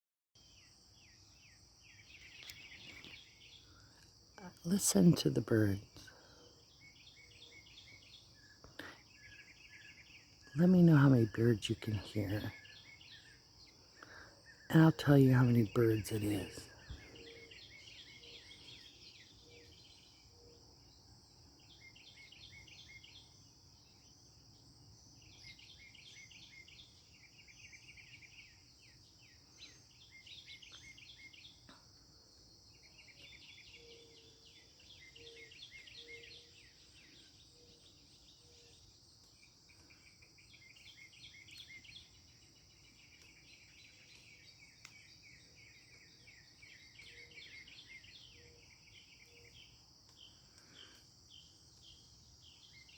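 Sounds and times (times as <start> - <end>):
mockingbird singing: 6.7 - 20.5, 32.9 - 38.9.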